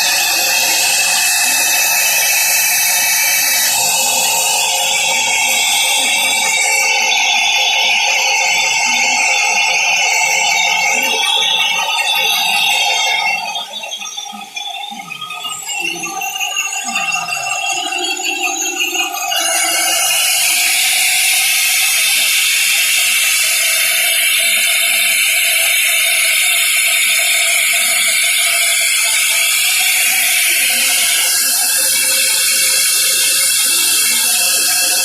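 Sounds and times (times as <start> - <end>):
band saw running: 0.0 - 12.9, 18.2 - 35.0.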